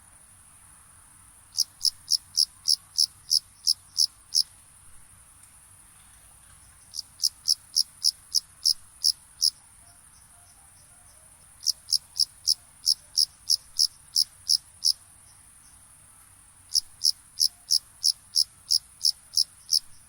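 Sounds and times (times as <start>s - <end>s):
cricket chirps: 0.1s - 20.0s
high-pitched insect trill: 1.5s - 4.5s, 6.7s - 15.9s, 16.7s - 20.0s.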